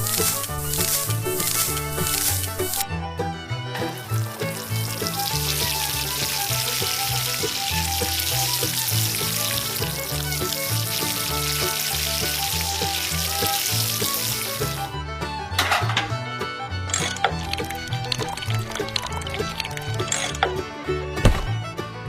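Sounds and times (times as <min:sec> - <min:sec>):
crackling hiss: 0:00.0 - 0:02.8.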